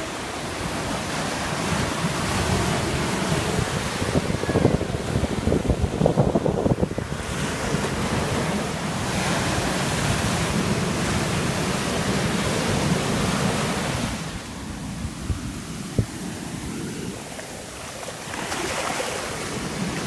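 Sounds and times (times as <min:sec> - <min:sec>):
ocean waves breaking: 0:00.0 - 0:20.0
wind buffeting microphone: 0:00.4 - 0:20.0.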